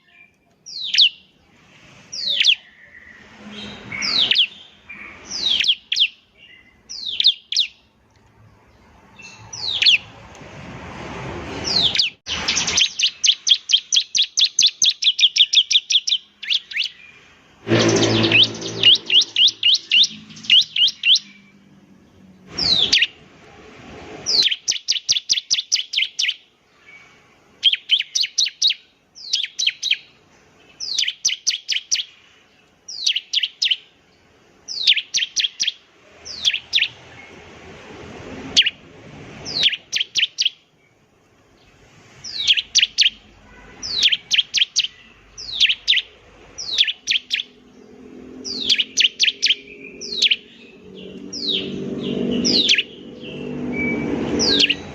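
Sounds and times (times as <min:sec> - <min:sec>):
bird singing high sharp notes: 0:02.2 - 0:07.8, 0:11.6 - 0:21.6, 0:39.4 - 0:40.6, 0:42.2 - 0:54.9.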